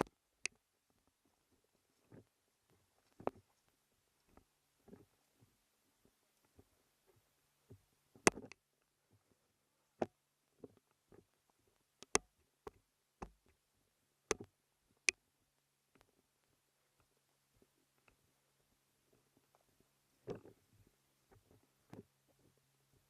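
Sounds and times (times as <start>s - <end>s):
sharp clicks and snaps: 0.0s - 0.6s, 8.2s - 8.6s, 12.0s - 13.6s, 14.3s - 15.2s
faint low hum: 0.0s - 23.0s.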